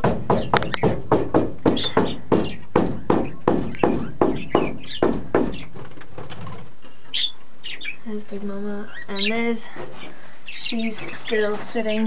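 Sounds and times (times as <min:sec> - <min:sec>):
rapid sharp knocking: 0:00.0 - 0:06.7.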